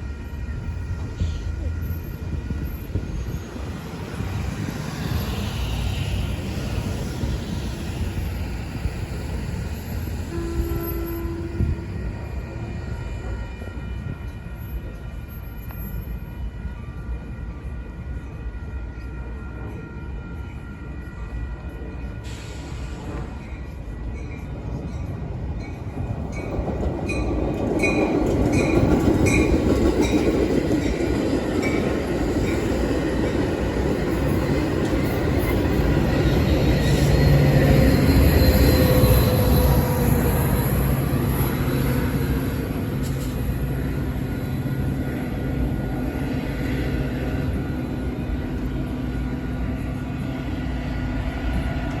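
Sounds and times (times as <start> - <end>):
train rumbling: 0.0 - 52.0
wheel or brake squeal: 35.4 - 42.2.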